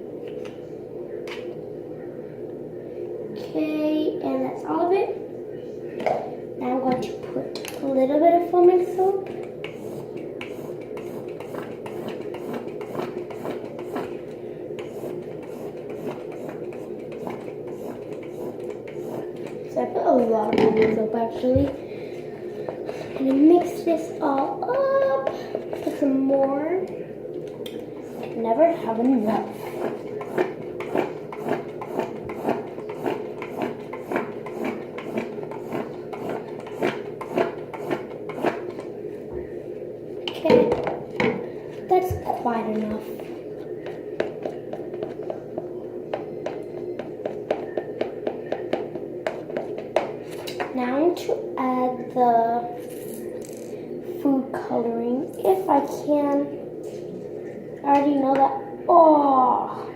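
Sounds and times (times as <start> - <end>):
background hum: 0.0 - 59.9
wooden stick scraping a bowl: 29.3 - 38.6.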